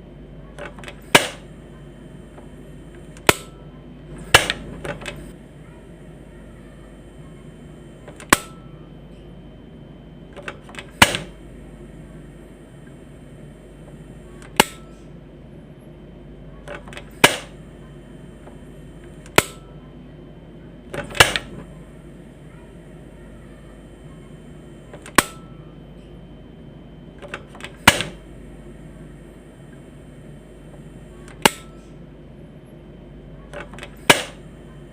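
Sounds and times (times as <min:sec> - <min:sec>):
stove knob clicks: 0:00.6 - 0:01.4, 0:04.3 - 0:05.2, 0:16.7 - 0:17.5, 0:21.0 - 0:21.6, 0:25.0 - 0:25.4, 0:31.3 - 0:31.7, 0:33.5 - 0:34.4
stove igniter snapping: 0:00.6 - 0:01.5, 0:02.9 - 0:03.6, 0:04.2 - 0:05.3, 0:08.0 - 0:08.6, 0:10.3 - 0:11.4, 0:14.4 - 0:14.9, 0:16.7 - 0:17.6, 0:18.5 - 0:19.7, 0:20.9 - 0:21.7, 0:24.9 - 0:25.5, 0:27.2 - 0:28.2, 0:31.3 - 0:31.8, 0:33.5 - 0:34.4.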